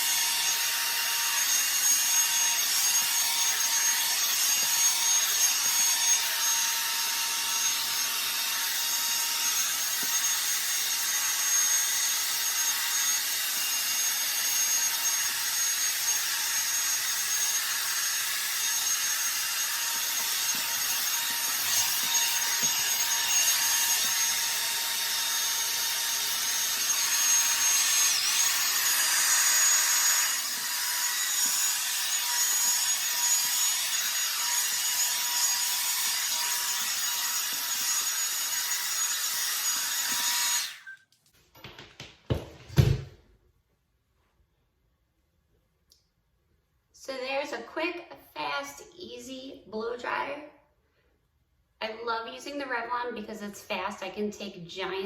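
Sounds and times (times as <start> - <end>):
hot air brush rushing and whining: 0.0 - 40.9.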